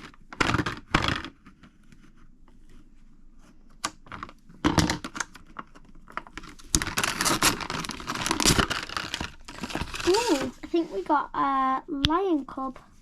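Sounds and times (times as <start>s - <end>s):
packaging crinkling: 5.0s - 10.7s
packaging tearing: 6.4s - 10.6s.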